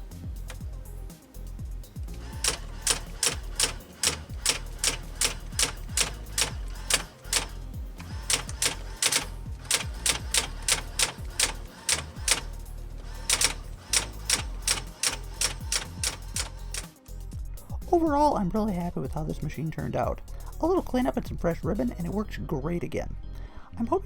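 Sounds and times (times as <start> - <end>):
background music: 0.0 - 24.0
electric typewriter typing: 2.2 - 17.0.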